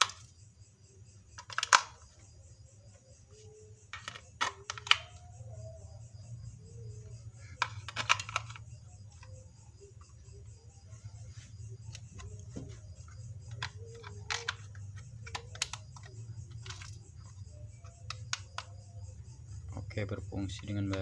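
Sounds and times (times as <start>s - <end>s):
plastic clicks and rattles: 0.0s - 0.3s, 1.3s - 2.3s, 3.4s - 5.5s, 7.0s - 11.0s, 11.8s - 21.0s.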